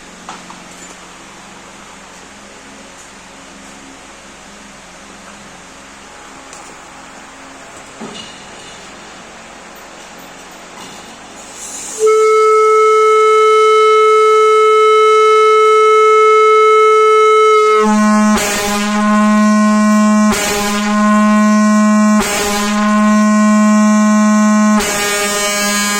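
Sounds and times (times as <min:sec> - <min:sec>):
marine air horn blast: 0:12.0 - 0:25.9.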